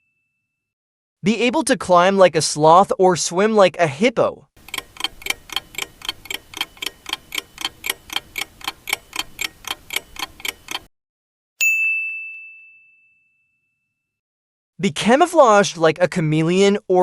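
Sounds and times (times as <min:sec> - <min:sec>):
bell ding: 0:00.0 - 0:00.6, 0:11.6 - 0:14.1
clock ticking: 0:04.6 - 0:10.9.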